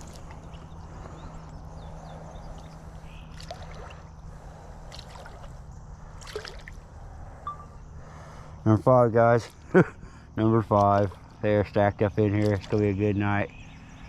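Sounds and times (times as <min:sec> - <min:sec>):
faint chirps and clicks: 0:00.0 - 0:04.0
faint steady hum: 0:00.0 - 0:14.0.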